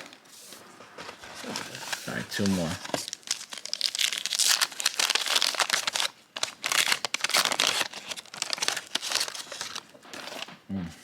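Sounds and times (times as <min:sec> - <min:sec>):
wax paper wrapper tearing and crinkling: 0:01.7 - 0:10.5.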